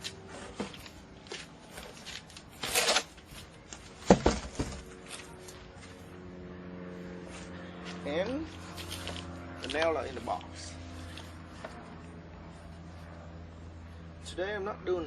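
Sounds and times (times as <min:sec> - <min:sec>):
rustling scrape: 0:08.6 - 0:09.8.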